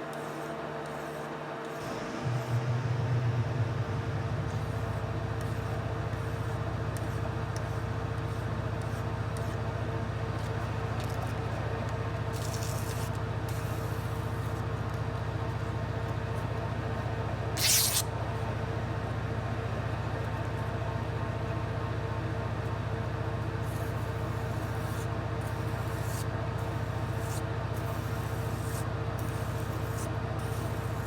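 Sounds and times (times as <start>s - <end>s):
electric machine humming: 1.8s - 6.1s.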